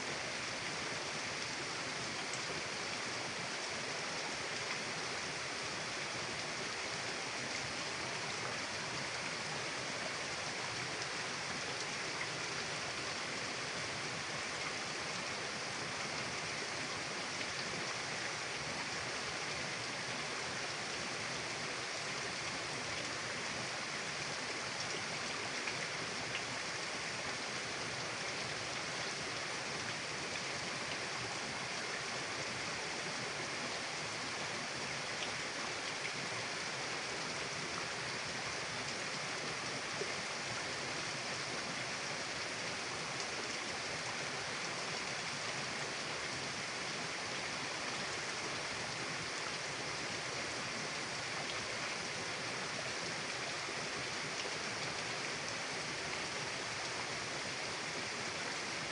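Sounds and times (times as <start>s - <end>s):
river water rushing: 0.0s - 58.9s
faint ticks: 2.2s - 2.6s.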